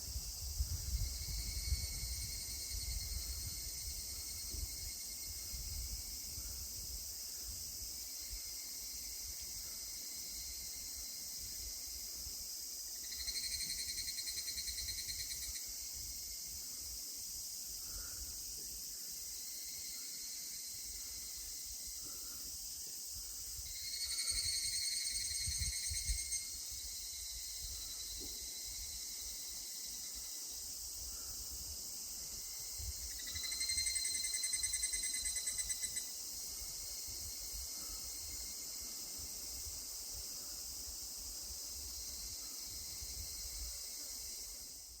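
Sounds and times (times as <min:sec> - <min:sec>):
high hiss of insects: 0:00.0 - 0:45.0
cicada ringing trill: 0:12.8 - 0:16.5, 0:19.2 - 0:22.0, 0:23.6 - 0:30.9, 0:31.9 - 0:40.0.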